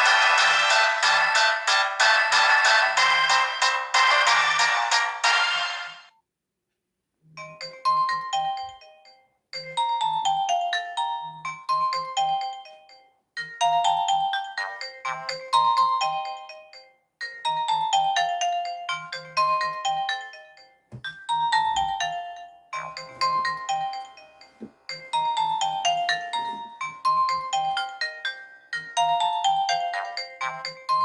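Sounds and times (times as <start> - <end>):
phone polyphonic ringtone: 0.0 - 5.9, 17.6 - 31.0.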